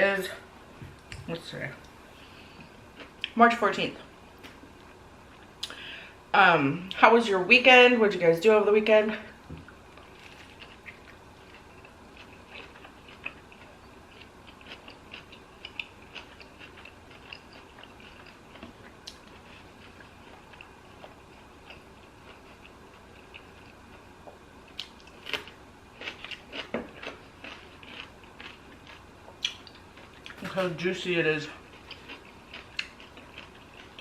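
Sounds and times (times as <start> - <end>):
wet mouth chewing clicks: 26.1 - 30.4.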